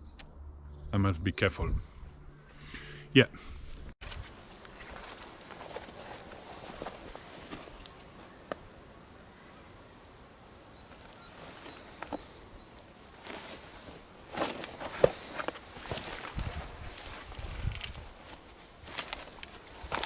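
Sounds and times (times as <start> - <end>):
rustling: 4.0 - 20.0
high bird chirps: 7.0 - 12.8.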